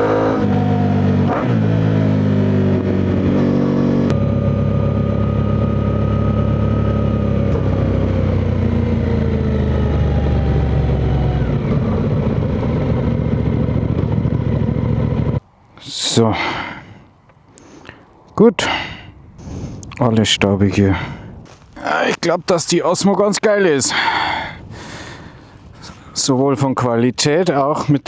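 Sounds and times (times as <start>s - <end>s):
motorcycle engine accelerating: 0.0s - 15.4s.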